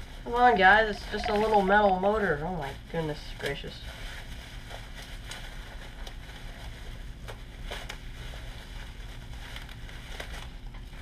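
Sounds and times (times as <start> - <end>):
packaging crinkling: 3.8 - 11.0.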